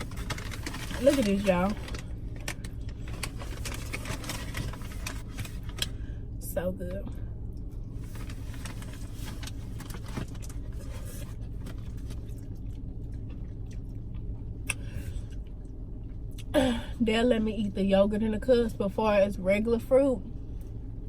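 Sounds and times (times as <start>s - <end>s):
car running low rumble: 0.0s - 21.0s
soft chewing: 10.4s - 16.5s
small clicks of eating: 11.7s - 16.5s.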